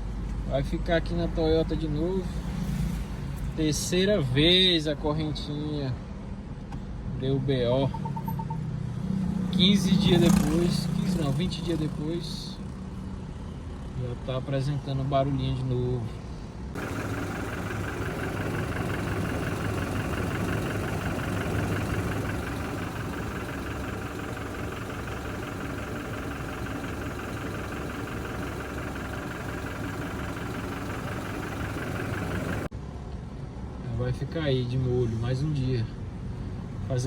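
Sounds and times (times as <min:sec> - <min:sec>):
engine idling: 0:16.7 - 0:32.7.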